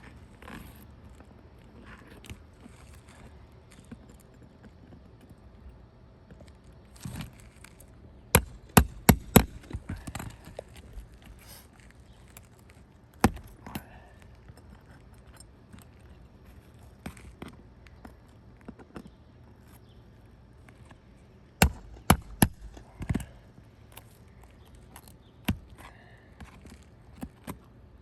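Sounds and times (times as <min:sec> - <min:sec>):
tool knocking at roofing nails: 0:08.4 - 0:10.3, 0:21.6 - 0:23.3.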